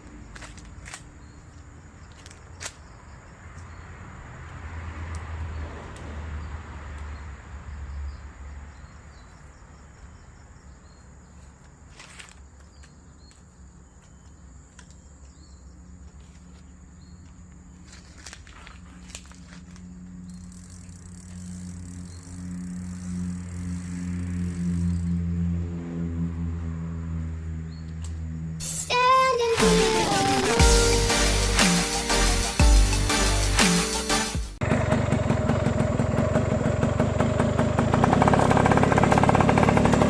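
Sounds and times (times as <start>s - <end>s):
high insect drone: 19.4s - 25.7s.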